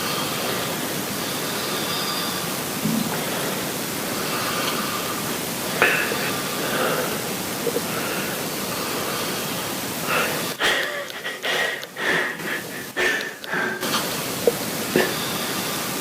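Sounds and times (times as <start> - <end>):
person breathing while sleeping: 3.1 - 15.9.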